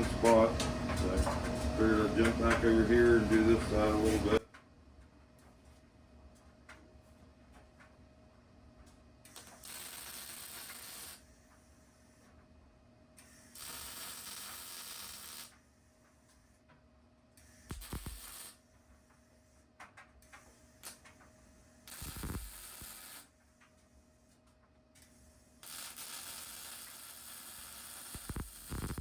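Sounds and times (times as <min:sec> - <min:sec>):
welding arc hissing and crackling: 0:09.3 - 0:11.3, 0:13.2 - 0:15.6, 0:17.5 - 0:18.6, 0:20.4 - 0:21.2, 0:21.9 - 0:23.3, 0:25.0 - 0:29.0.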